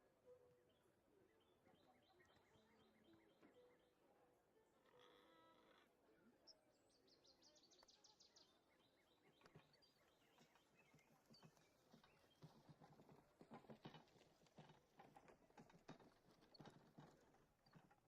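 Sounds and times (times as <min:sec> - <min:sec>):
birds chirping: 0:00.2 - 0:04.1, 0:04.7 - 0:13.2.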